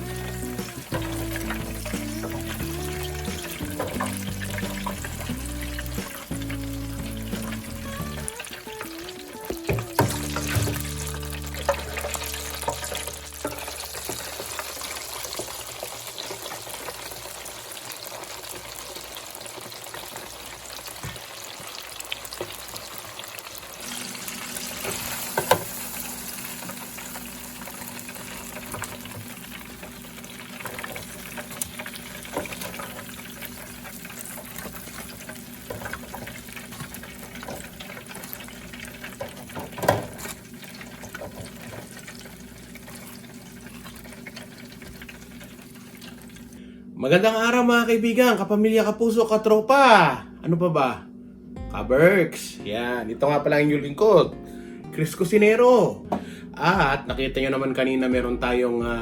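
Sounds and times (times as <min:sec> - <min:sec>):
chicken frying in hot oil: 0:00.0 - 0:46.6.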